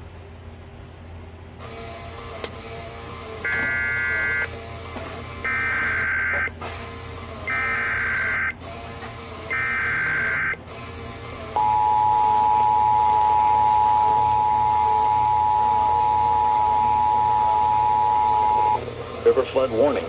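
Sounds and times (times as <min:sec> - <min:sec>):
two-tone attention signal: 0:03.5 - 0:04.5, 0:05.5 - 0:06.5, 0:07.5 - 0:08.5, 0:09.5 - 0:10.6, 0:11.6 - 0:18.8
faint low hum: 0:11.6 - 0:18.8.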